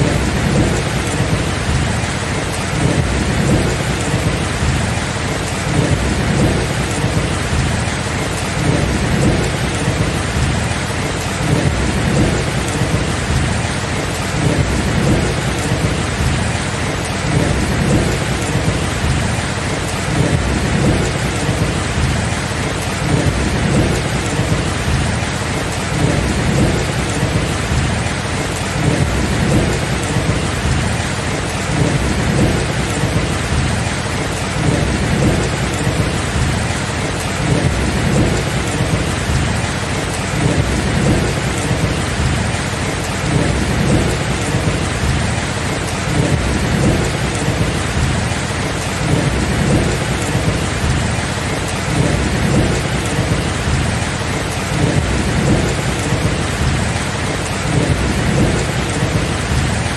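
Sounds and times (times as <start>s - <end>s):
heavy rain: 0.0s - 59.9s
rolling thunder rumbling: 0.0s - 59.9s.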